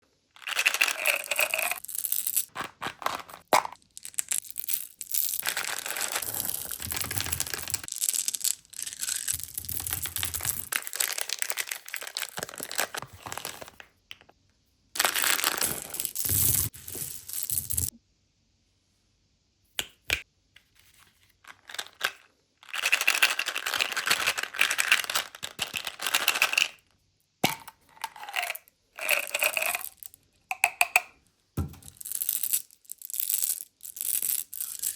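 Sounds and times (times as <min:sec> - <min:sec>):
hard candies clattering: 0:00.4 - 0:13.7, 0:15.0 - 0:17.9, 0:21.5 - 0:26.8, 0:27.4 - 0:31.0, 0:31.6 - 0:34.9
plastic packaging crinkling: 0:00.4 - 0:13.8.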